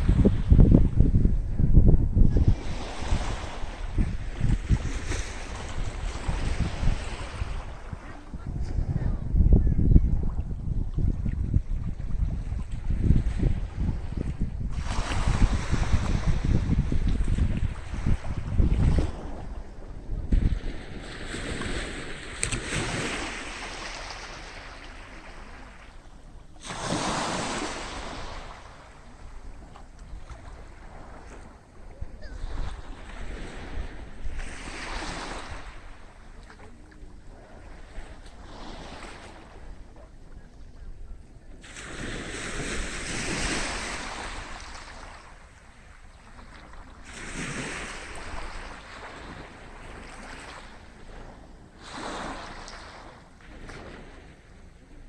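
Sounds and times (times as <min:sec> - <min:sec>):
sea waves washing onto beach: 0:00.0 - 0:01.5, 0:12.6 - 0:40.2, 0:41.6 - 0:55.0
wind rumble on microphone: 0:00.0 - 0:24.7, 0:26.0 - 0:55.0.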